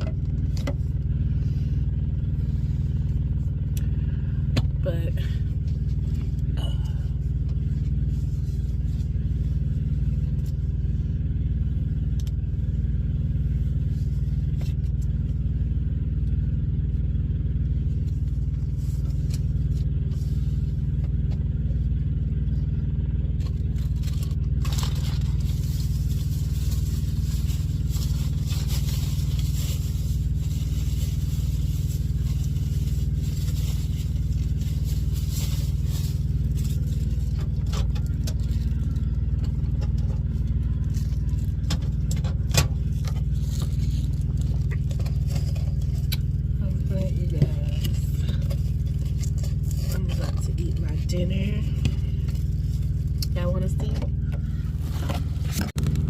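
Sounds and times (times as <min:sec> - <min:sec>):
engine idling: 0:00.0 - 0:56.0.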